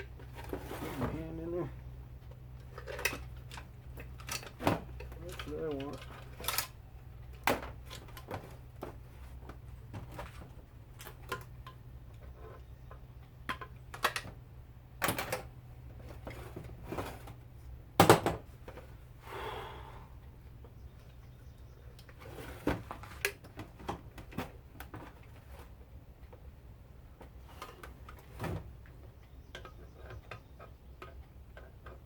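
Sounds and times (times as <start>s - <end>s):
hand tools clicking and knocking: 2.6s - 8.3s.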